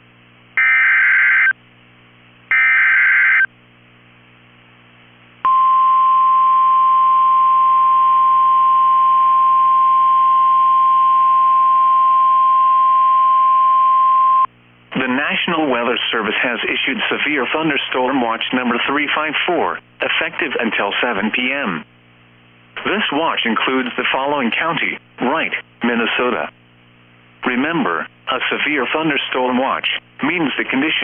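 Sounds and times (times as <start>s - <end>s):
high steady alarm tone: 0.6s - 1.5s, 2.5s - 3.5s.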